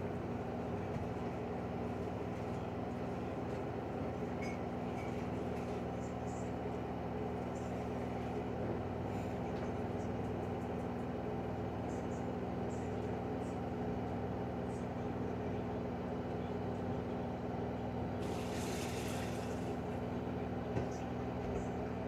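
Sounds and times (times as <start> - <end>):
washing machine spinning: 17.5 - 22.0
hiss: 18.2 - 19.8.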